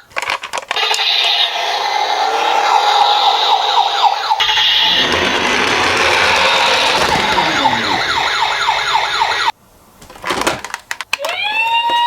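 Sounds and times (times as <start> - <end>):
toy electronic sirens: 0.8 - 9.5
loud dense noise: 1.1 - 9.5.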